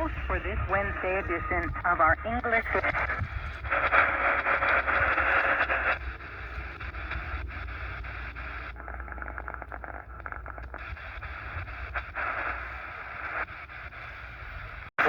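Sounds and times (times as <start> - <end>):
low hum: 0.0 - 14.8
radio static hiss: 0.0 - 15.0
faint tuning clicks: 4.8 - 11.3.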